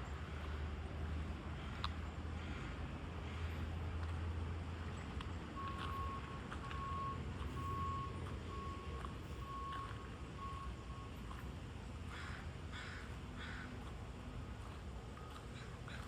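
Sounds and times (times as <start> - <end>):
low engine rumble: 0.0 - 16.0
reversing alarm beeping: 5.5 - 11.4.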